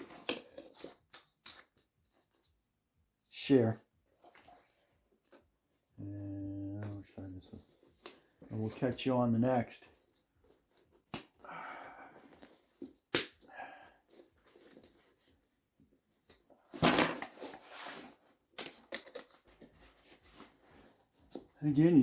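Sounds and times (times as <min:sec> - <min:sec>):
soft rustling: 0:06.6 - 0:11.4, 0:19.2 - 0:21.7.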